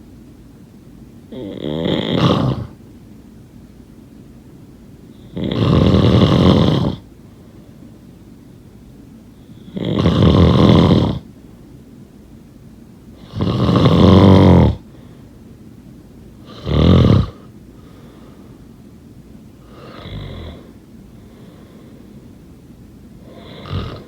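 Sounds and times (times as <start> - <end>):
person snoring: 1.3 - 2.7, 5.3 - 7.0, 9.7 - 11.2, 13.2 - 14.8, 16.5 - 17.4, 19.7 - 20.8, 23.2 - 24.0.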